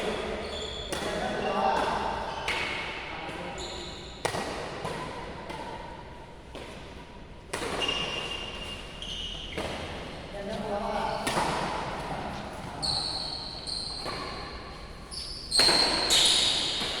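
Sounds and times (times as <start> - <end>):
racket hitting shuttlecock: 0.1 - 3.5, 4.2 - 10.1, 11.2 - 12.6, 13.9 - 17.0
shoes squeaking on court: 0.2 - 2.4, 3.4 - 4.2, 7.6 - 17.0.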